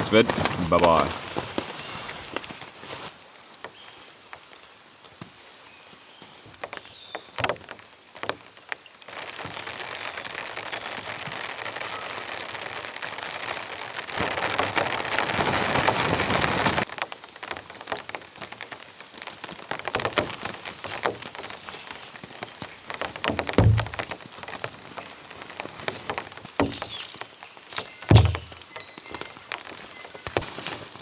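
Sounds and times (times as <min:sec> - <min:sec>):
rain falling: 0:00.0 - 0:31.0
low thump: 0:23.6 - 0:24.0, 0:28.1 - 0:28.6.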